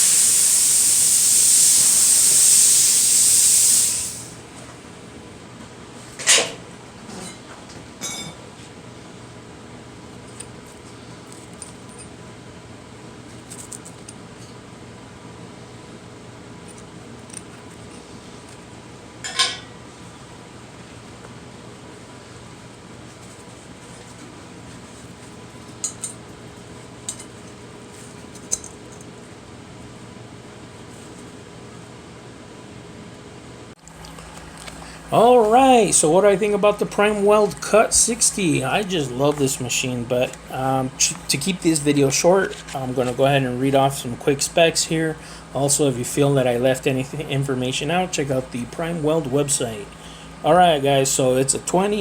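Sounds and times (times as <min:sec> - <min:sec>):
steady low hum: 0:14.2 - 0:52.0.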